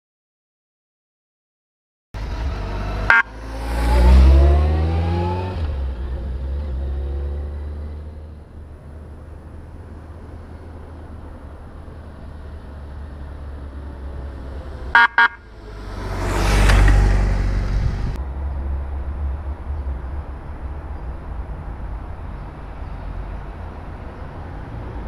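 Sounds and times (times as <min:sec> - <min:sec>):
short beep: 0:03.1 - 0:03.3, 0:15.0 - 0:15.4.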